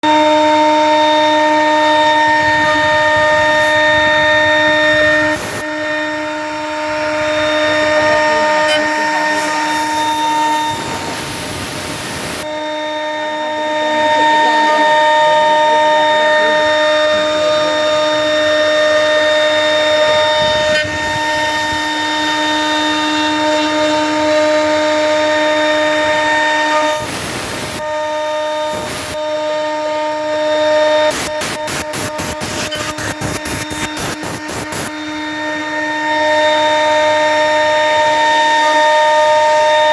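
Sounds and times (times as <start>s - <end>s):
router spindle whining: 0.0s - 39.9s
loud hiss: 1.8s - 5.7s, 7.1s - 12.4s, 26.9s - 29.3s, 31.1s - 35.4s.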